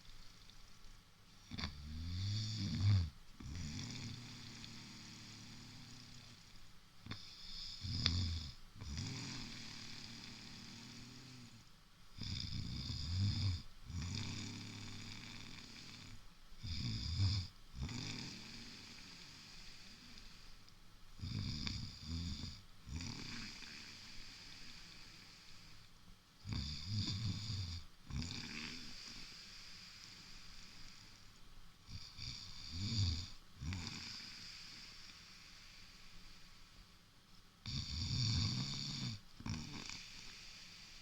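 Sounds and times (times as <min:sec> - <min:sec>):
heavy snoring: 0:01.4 - 0:06.5, 0:07.1 - 0:11.6, 0:12.2 - 0:20.3, 0:21.2 - 0:25.5, 0:26.4 - 0:31.0, 0:31.9 - 0:35.1, 0:37.6 - 0:41.0
soft breathing: 0:03.5 - 0:07.9, 0:18.2 - 0:20.7, 0:23.2 - 0:25.9, 0:28.4 - 0:37.0, 0:39.6 - 0:41.0.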